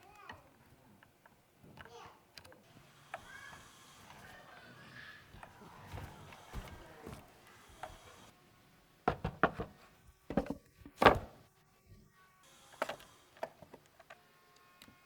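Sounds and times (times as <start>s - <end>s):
knocks on wood: 9.1s - 11.4s.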